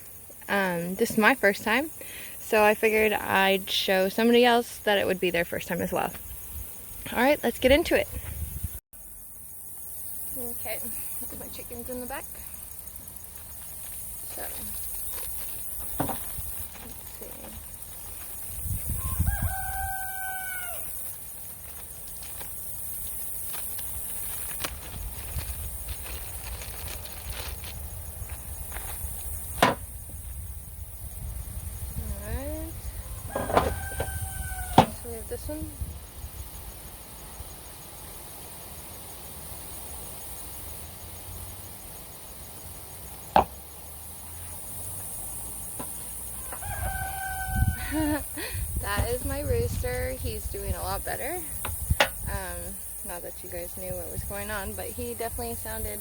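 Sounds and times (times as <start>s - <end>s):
rooster crowing: 18.8s - 21.1s, 32.9s - 35.1s, 46.3s - 48.6s.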